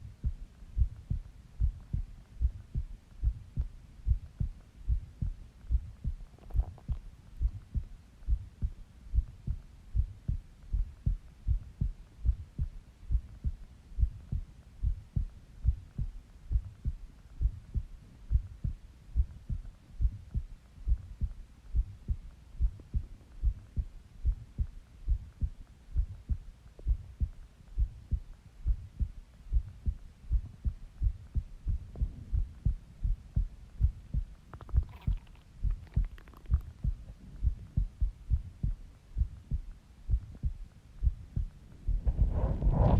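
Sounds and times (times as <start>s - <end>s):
heartbeat thumps: 0.0s - 42.9s.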